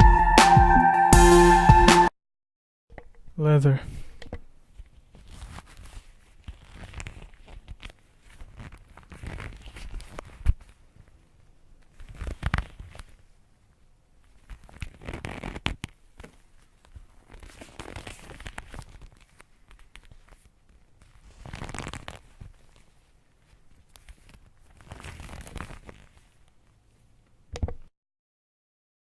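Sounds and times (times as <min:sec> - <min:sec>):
leather stretching with scratchy strain: 0:04.8 - 0:11.2, 0:11.9 - 0:13.4, 0:14.2 - 0:26.7.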